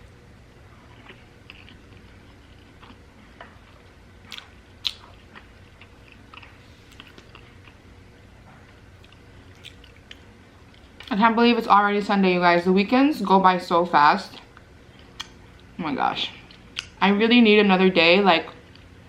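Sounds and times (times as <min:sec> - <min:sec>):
person chewing food: 0:00.5 - 0:07.9, 0:08.6 - 0:11.1.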